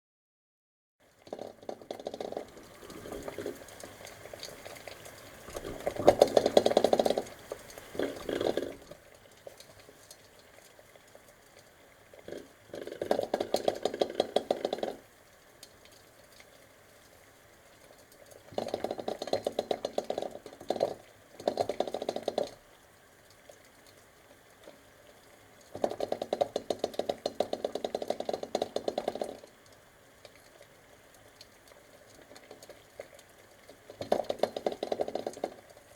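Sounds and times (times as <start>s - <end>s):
eggs rattling in boiling pot: 1.2s - 8.9s, 12.2s - 15.1s, 18.1s - 22.7s, 25.7s - 29.6s, 32.2s - 35.9s.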